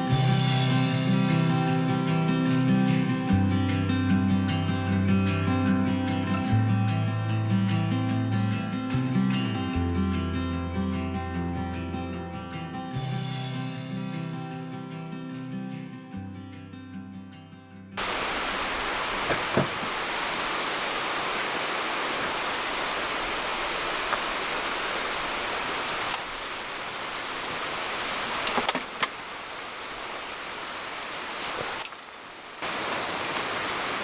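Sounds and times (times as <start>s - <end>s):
acoustic guitar music: 0.0s - 18.0s
rain and river rushing: 18.0s - 34.0s.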